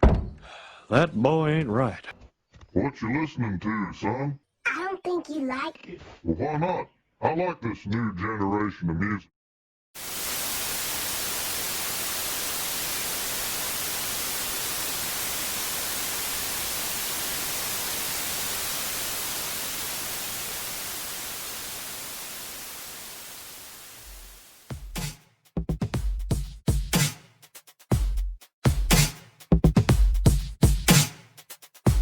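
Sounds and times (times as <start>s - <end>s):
static hiss: 10.0s - 24.8s.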